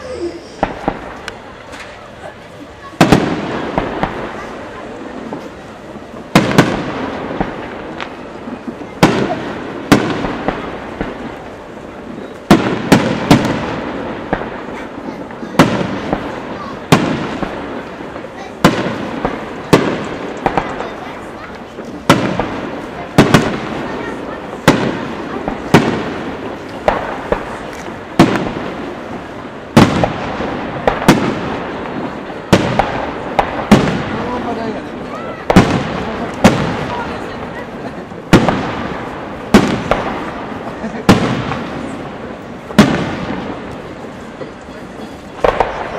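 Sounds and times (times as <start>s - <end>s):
faint firework pops and crackle: 0.0s - 45.9s
firework shells bursting: 24.6s - 34.2s.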